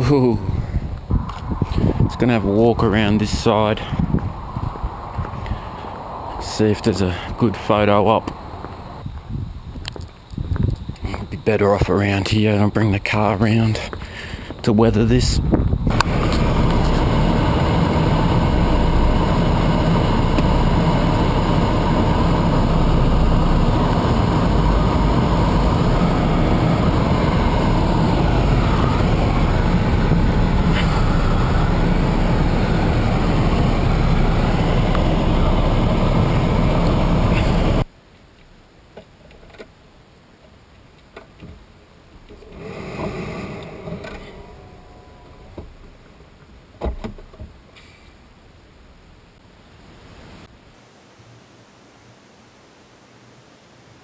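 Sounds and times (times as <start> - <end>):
car engine and road noise: 1.0 - 9.1, 15.5 - 37.9, 50.8 - 54.0.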